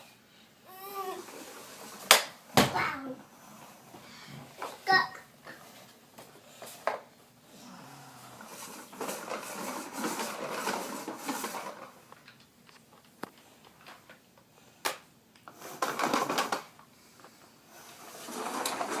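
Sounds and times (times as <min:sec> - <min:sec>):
rustling handling noises: 0:08.4 - 0:14.6.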